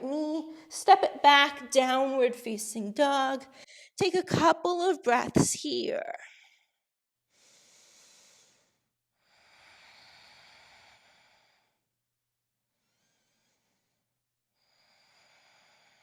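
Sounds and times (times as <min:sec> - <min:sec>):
faint slow breathing: 0:07.3 - 0:11.9, 0:12.7 - 0:16.0.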